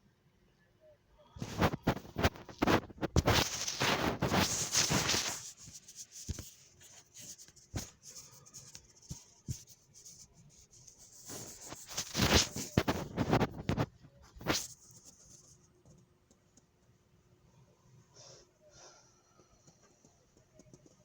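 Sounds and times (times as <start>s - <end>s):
rustling rubbing noise: 1.4s - 16.0s.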